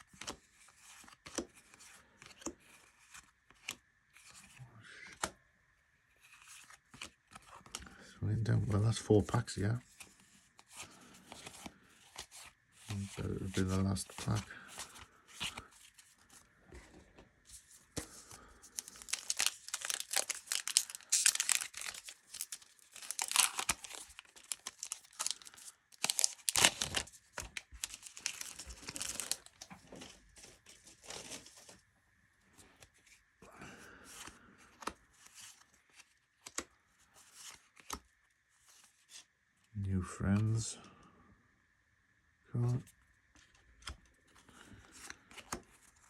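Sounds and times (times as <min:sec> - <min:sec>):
cards being handled: 0:00.1 - 0:05.4, 0:06.1 - 0:08.0, 0:08.6 - 0:31.8, 0:34.0 - 0:39.2, 0:42.6 - 0:46.0
card pack wrapper tearing and crinkling: 0:18.0 - 0:31.7.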